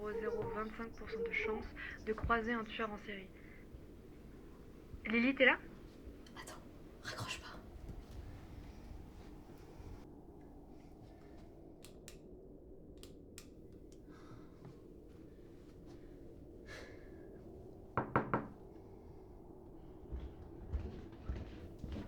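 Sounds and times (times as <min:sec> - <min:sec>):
knocks on a door: 0:18.0 - 0:18.6.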